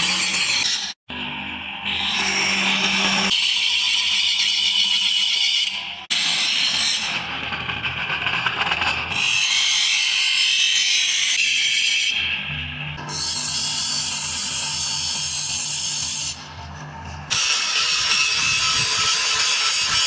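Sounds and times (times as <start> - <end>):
tool abrading metal: 13.0 - 20.0.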